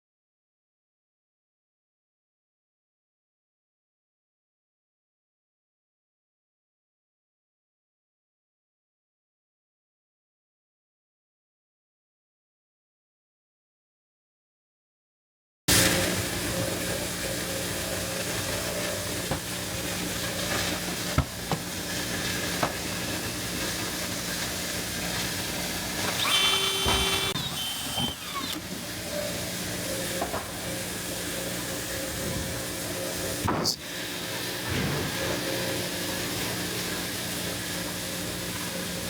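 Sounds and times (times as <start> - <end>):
grain dryer hissing: 15.7 - 39.0.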